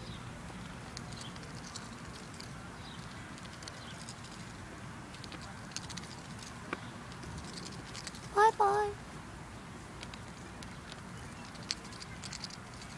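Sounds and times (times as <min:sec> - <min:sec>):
low outdoor rumble: 0:00.0 - 0:12.9
duck bill clicking: 0:10.0 - 0:12.9.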